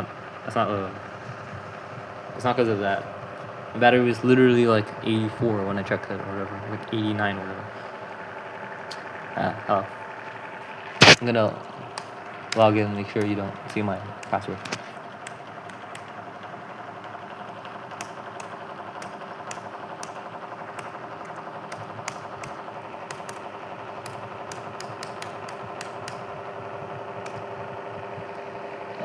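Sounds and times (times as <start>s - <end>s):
steady background hum: 0.0s - 29.0s
laptop keyboard typing: 11.0s - 29.0s.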